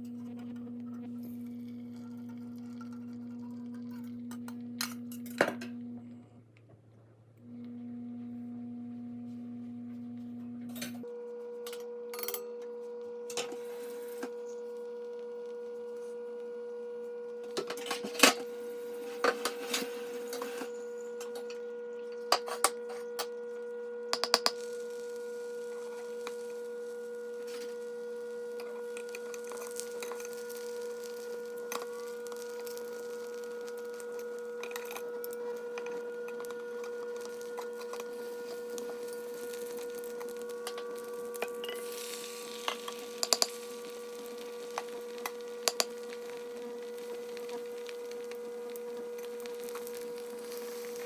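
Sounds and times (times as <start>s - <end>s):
steady pitched hum: 14.4s - 51.0s
kitchen utensils clinking: 40.6s - 43.9s, 44.7s - 46.2s.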